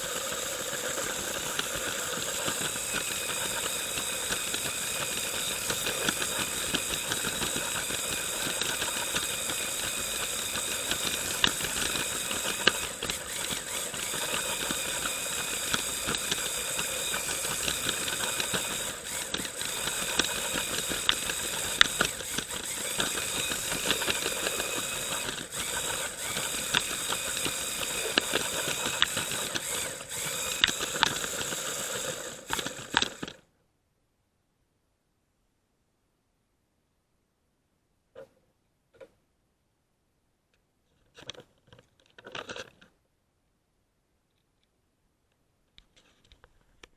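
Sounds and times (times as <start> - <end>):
wheels clicking over track joints: 0.0 - 33.4
toy train motor whining: 0.0 - 33.5.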